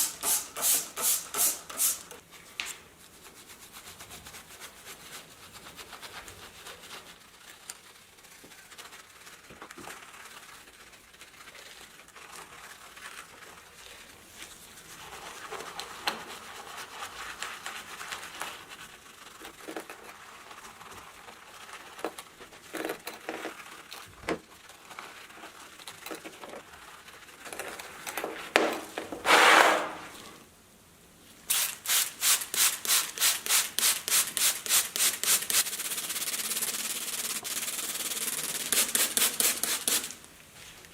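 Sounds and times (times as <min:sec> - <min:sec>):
small clicks and scrapes: 0:05.8 - 0:30.4
rasping rubbing: 0:28.6 - 0:30.2.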